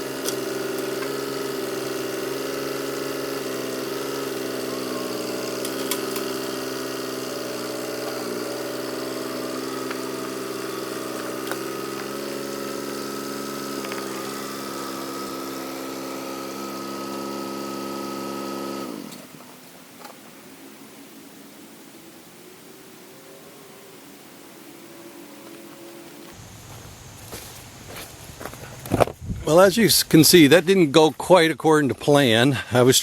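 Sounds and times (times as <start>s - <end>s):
engine running: 0.0s - 19.5s, 25.9s - 31.3s.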